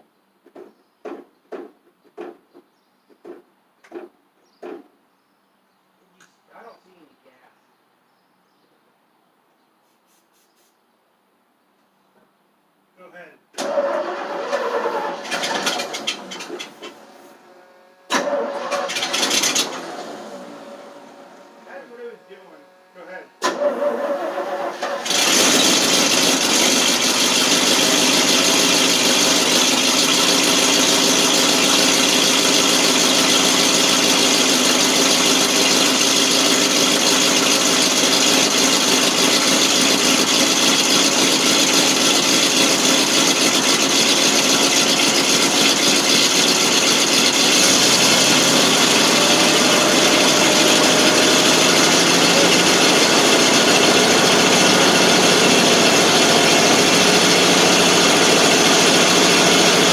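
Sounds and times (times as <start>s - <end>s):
lower engine note: 13.6s - 59.9s
truck engine running: 13.6s - 59.9s.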